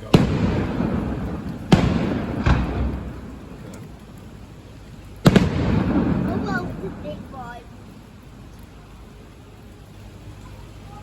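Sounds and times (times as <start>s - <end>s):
firework shells bursting: 0.0s - 8.8s
rolling rumble of echo: 0.0s - 11.0s.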